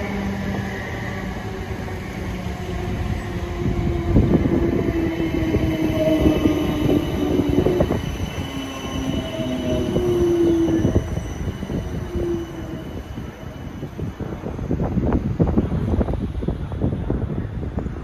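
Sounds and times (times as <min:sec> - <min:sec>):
wheels squealing: 0:00.0 - 0:14.0
train rumbling: 0:00.0 - 0:18.0.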